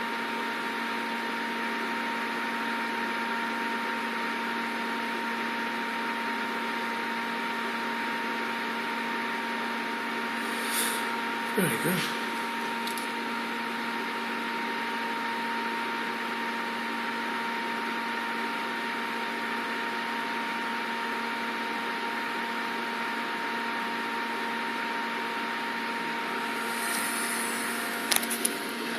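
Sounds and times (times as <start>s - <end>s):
machine hum: 10.2s - 13.4s, 26.2s - 28.9s.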